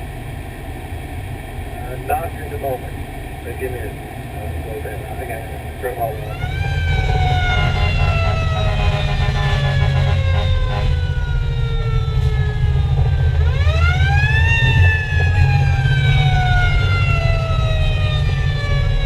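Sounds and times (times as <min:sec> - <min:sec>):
road noise: 0:00.0 - 0:19.0
truck engine rumble: 0:00.0 - 0:19.0
fire engine siren wailing: 0:04.6 - 0:19.0.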